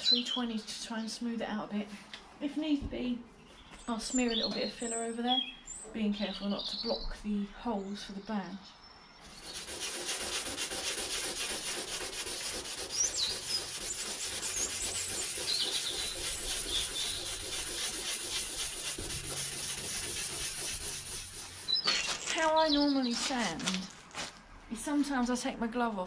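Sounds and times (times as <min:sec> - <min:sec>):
sandpaper rubbing on metal: 0:09.3 - 0:23.4.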